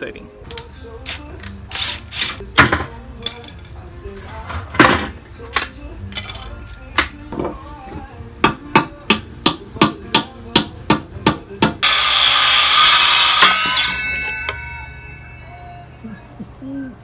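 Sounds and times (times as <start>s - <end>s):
hammer blows: 8.5s - 15.4s
ringing tone: 11.8s - 16.0s.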